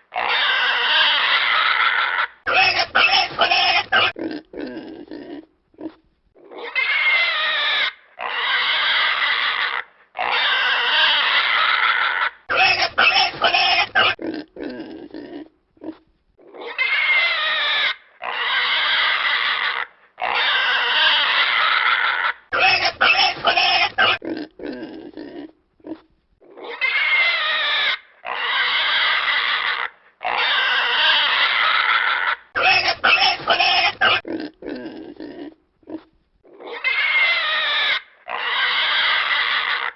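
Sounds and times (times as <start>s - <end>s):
pig grunting: 0.0s - 39.9s
pig squealing: 0.0s - 39.9s.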